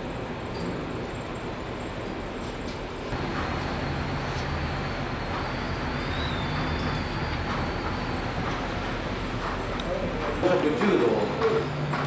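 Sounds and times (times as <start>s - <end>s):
ship engines droning: 3.0s - 12.0s
ferry mechanical rumble: 3.1s - 12.0s.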